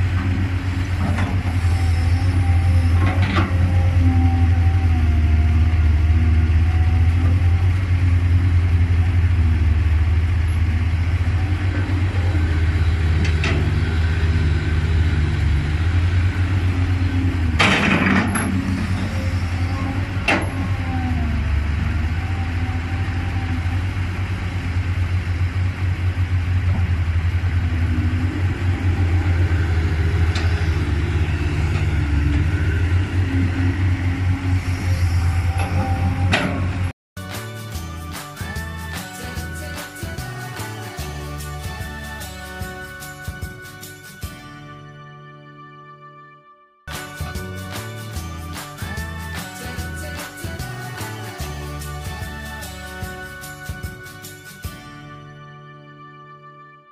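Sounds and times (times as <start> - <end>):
excavator diesel engine running: 0.0 - 44.6, 46.9 - 54.9.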